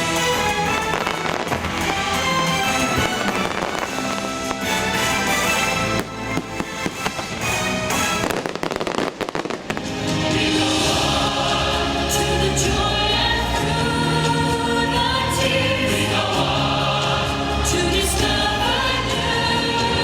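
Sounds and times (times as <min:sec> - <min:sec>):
fireworks bursting and crackling: 0:00.0 - 0:11.0
orchestral music with choir: 0:00.0 - 0:20.0.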